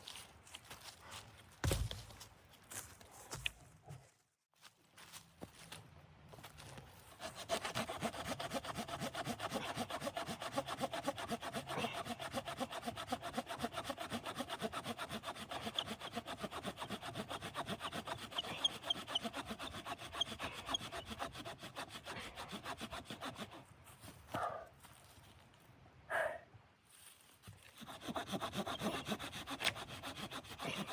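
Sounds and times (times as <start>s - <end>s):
hand saw cutting wood: 7.1s - 23.7s, 27.6s - 30.9s.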